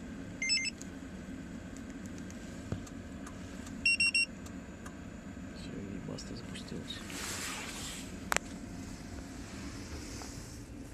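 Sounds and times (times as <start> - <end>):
steady low hum: 0.0 - 10.9
key fob beeping: 0.4 - 0.7, 3.9 - 4.3.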